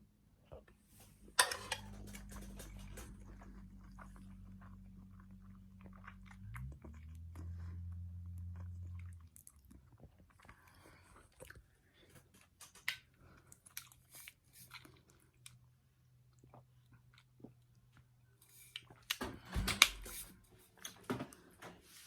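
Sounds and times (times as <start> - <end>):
low steady hum: 0.0 - 12.4
chewing and mouth sounds: 1.9 - 19.2.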